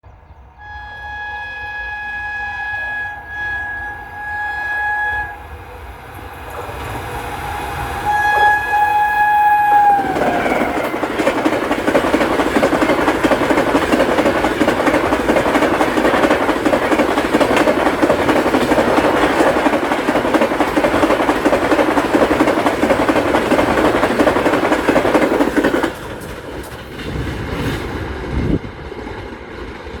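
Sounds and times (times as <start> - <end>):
train rushing past: 0.1 - 30.0
locomotive horn blasts: 0.6 - 5.6, 8.0 - 10.8.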